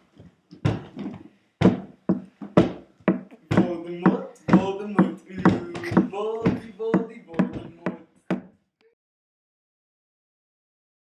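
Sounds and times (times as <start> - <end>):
a cappella chanting voices: 3.4 - 8.1.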